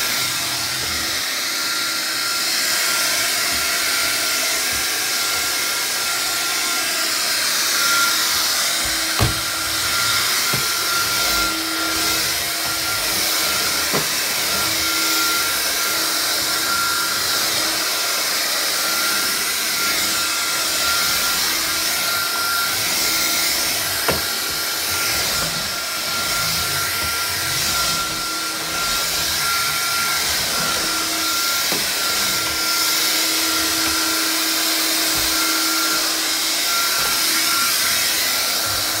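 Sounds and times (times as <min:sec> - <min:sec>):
vacuum cleaner whining: 0:00.0 - 0:39.0.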